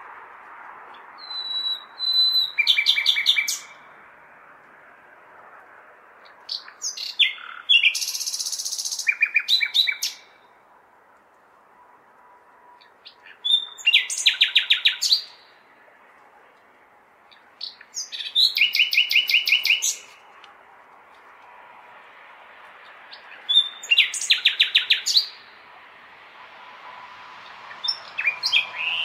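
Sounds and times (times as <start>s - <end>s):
city background hum: 0.0s - 29.0s
nightingale singing: 1.0s - 3.9s, 6.2s - 10.5s, 12.8s - 15.6s, 17.3s - 20.2s, 23.1s - 25.6s, 27.4s - 29.0s.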